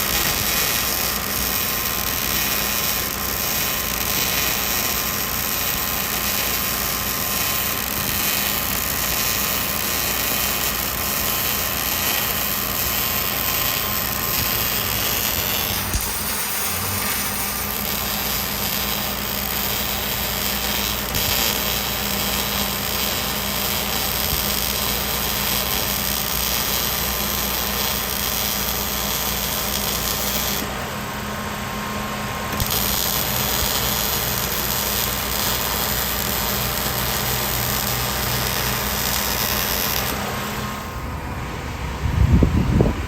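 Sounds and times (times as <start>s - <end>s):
power tool hiss: 0.0s - 30.8s, 32.5s - 40.8s.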